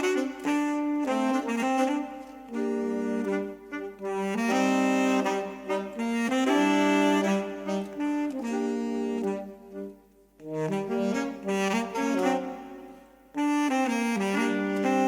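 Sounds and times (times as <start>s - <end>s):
saxophones playing in harmony: 0.0s - 15.0s.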